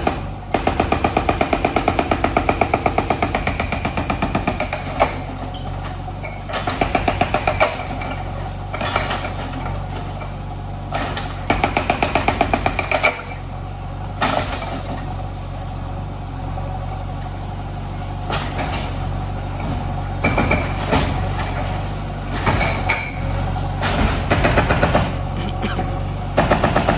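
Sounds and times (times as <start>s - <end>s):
diesel engine running: 0.0s - 26.9s
rapid rattling knocks: 23.8s - 25.3s, 26.4s - 26.9s.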